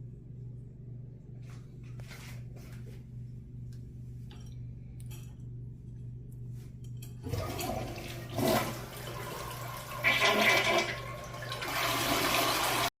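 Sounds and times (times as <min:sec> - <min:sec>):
toilet flushing: 0:07.2 - 0:12.9.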